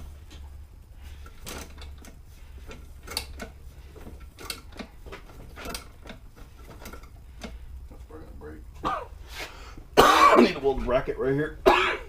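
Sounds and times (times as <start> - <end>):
steady low hum: 0.0 - 12.0
metal tools clanking: 1.1 - 9.0.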